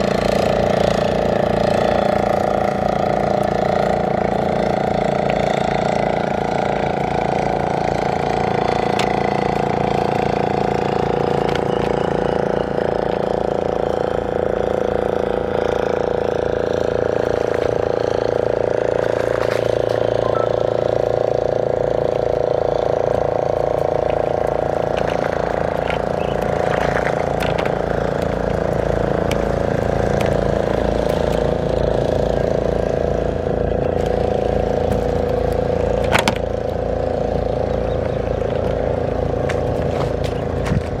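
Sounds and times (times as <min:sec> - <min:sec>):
boat engine running: 0:00.0 - 0:41.0.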